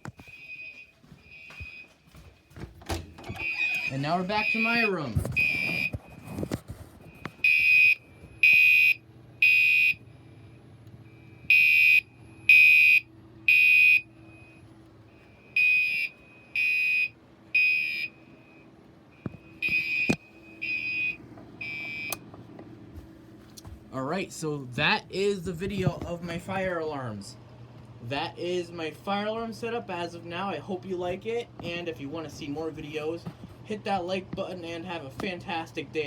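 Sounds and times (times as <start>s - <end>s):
fire alarm high-pitched beeps: 0.2s - 2.0s, 3.3s - 6.3s, 7.1s - 10.0s, 11.1s - 22.2s.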